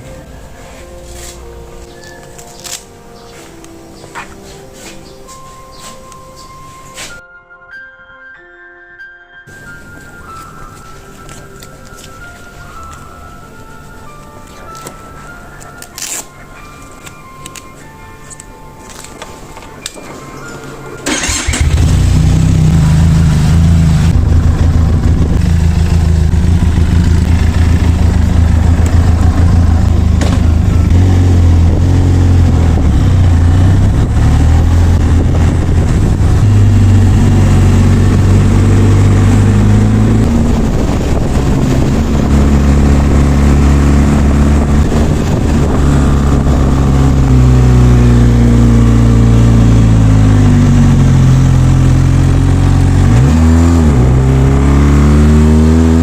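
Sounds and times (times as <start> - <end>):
motorcycle engine revving: 21.0 - 56.0.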